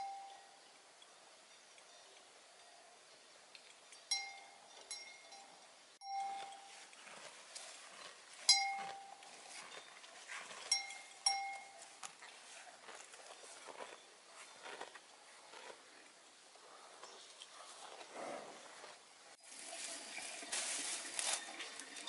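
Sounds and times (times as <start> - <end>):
ringing metallic clinks: 0.0 - 2.8, 3.7 - 7.0, 8.5 - 9.8, 10.6 - 11.8.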